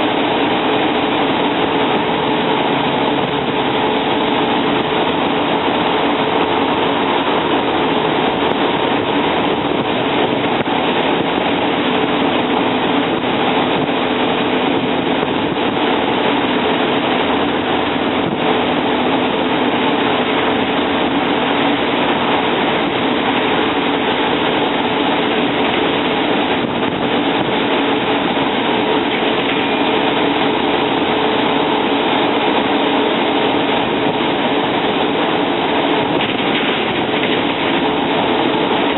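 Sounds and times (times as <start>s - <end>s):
diesel bus engine running: 0.0s - 38.9s
road noise: 0.0s - 38.9s
bus body rattle: 20.4s - 38.9s.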